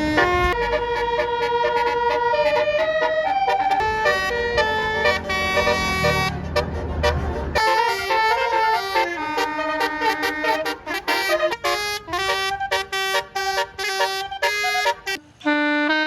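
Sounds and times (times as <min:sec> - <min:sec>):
multi-tone bus horn melody: 0:00.0 - 0:16.0.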